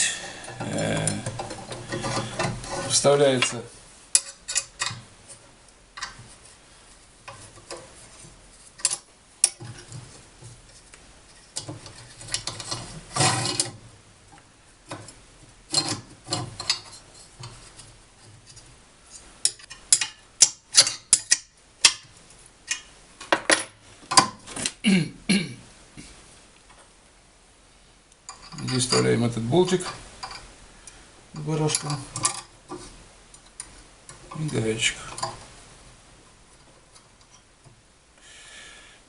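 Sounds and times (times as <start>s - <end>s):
metal scrape: 0.0s - 6.6s, 7.2s - 13.8s
steel parts clinking: 0.1s - 5.0s, 31.4s - 32.5s.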